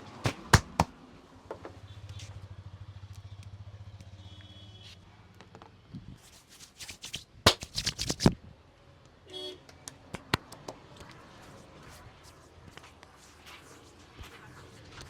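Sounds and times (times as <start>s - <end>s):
sharp hand slaps: 0.2s - 1.0s, 6.8s - 8.4s.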